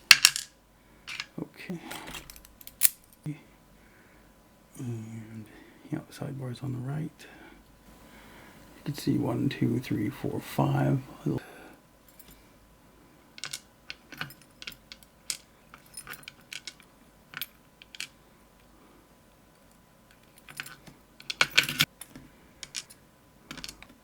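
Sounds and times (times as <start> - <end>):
small metal parts clinking: 0.0 - 3.3, 13.4 - 18.7, 19.5 - 24.0.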